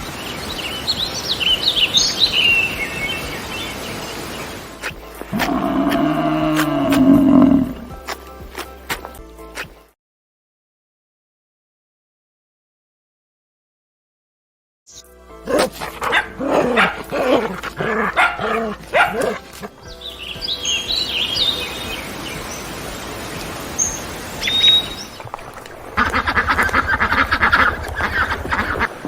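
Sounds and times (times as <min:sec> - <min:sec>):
birds chirping: 0:00.0 - 0:08.1, 0:15.5 - 0:29.0
steady hiss: 0:00.0 - 0:08.2, 0:20.0 - 0:27.6
dog barking: 0:15.5 - 0:19.7.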